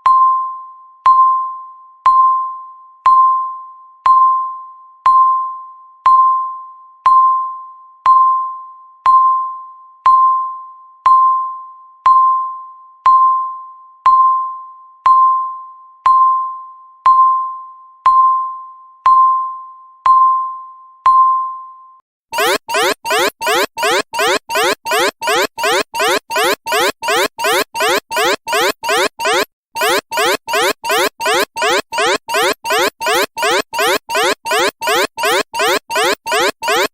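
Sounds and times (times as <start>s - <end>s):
countdown timer beeping: 22.4s - 36.9s.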